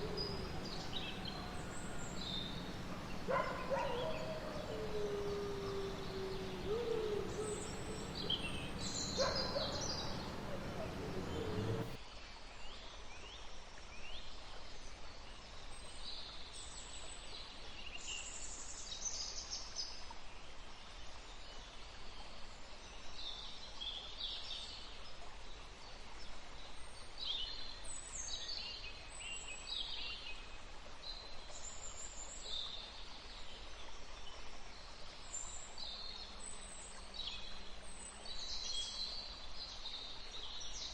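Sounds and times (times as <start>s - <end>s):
bird calls: 0.0s - 12.0s
low howl: 0.0s - 12.0s
steady hiss: 0.0s - 12.0s.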